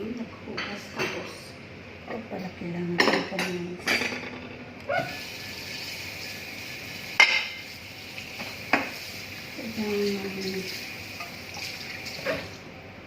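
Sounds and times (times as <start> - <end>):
dishes clinking: 3.0 - 4.6, 7.2 - 7.7.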